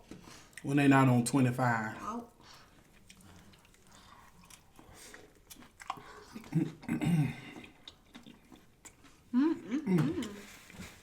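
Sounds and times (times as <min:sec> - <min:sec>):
chewing and biting food: 0:02.4 - 0:10.8.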